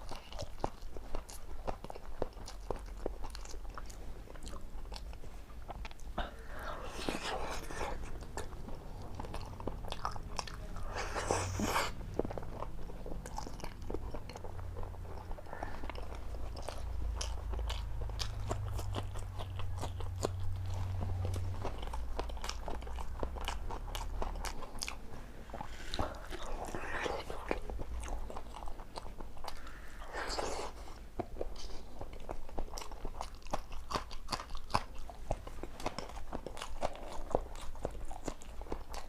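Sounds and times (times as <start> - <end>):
chewing and biting crunches: 0.0 - 39.0
steady low hum: 2.2 - 39.0.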